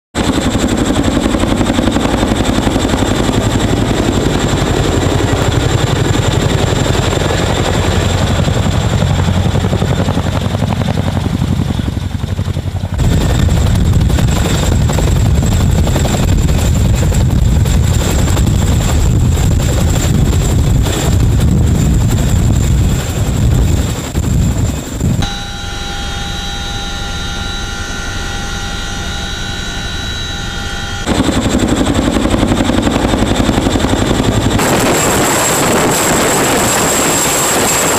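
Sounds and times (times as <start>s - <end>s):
helicopter engines rumbling: 0.2s - 37.9s
helicopter rotor beat: 0.2s - 37.9s
turbine whine: 13.0s - 37.9s.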